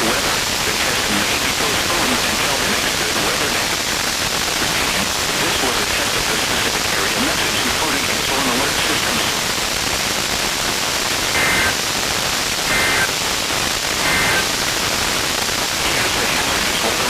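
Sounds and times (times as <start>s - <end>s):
radio reception hiss: 0.0s - 17.0s
warbling digital data tones: 11.3s - 11.8s, 12.6s - 13.2s, 13.9s - 14.6s.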